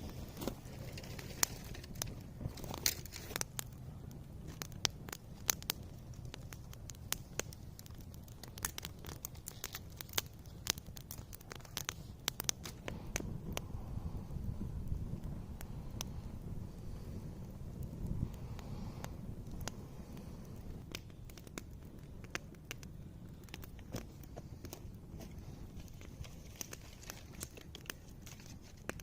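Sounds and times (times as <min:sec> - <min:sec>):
steady low rumble: 0:00.0 - 0:29.0
twigs snapping and clicking: 0:00.4 - 0:03.8, 0:04.5 - 0:13.2, 0:22.3 - 0:29.0.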